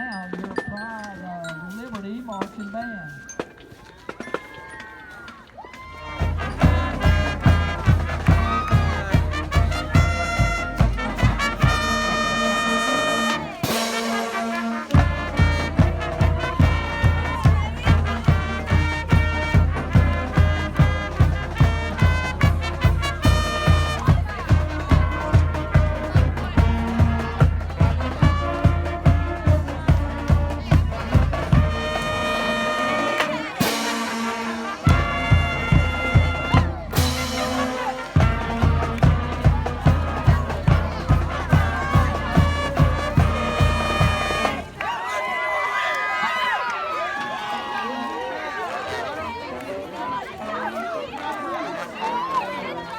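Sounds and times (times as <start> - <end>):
marching band brass: 5.6 - 52.9
steady drum beat: 5.7 - 44.9.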